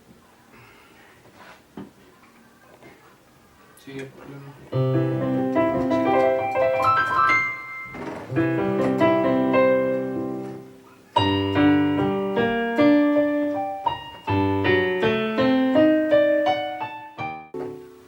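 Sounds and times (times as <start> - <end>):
keyboard playing piano chords: 4.7 - 18.0.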